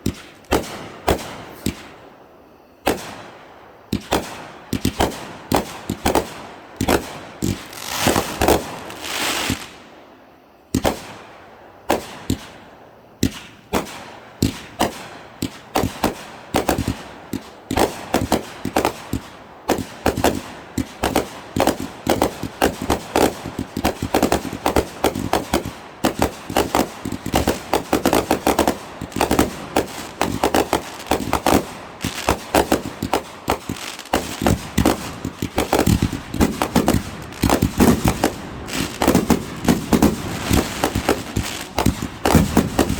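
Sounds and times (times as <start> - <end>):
fireworks bangs and pops: 0.0 - 2.0, 3.9 - 9.8, 10.8 - 11.2, 11.9 - 12.6, 13.2 - 42.9
fireworks hissing: 7.4 - 9.8, 26.2 - 42.9.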